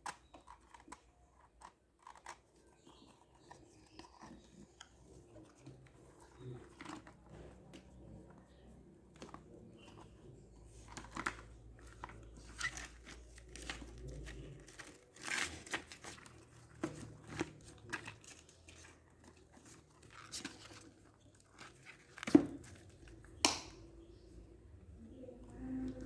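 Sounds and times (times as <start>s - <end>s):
packaging crinkling and tearing: 10.7s - 23.4s.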